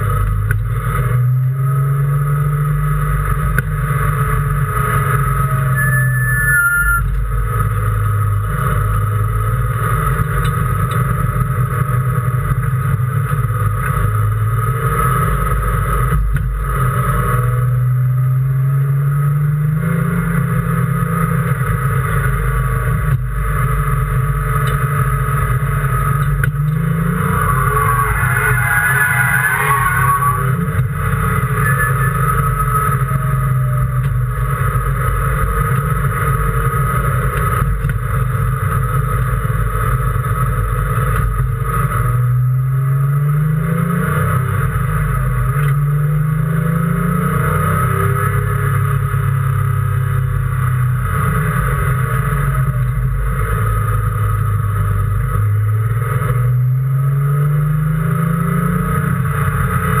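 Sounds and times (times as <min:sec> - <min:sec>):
race car engine shifting gears: 0:22.9 - 0:28.0.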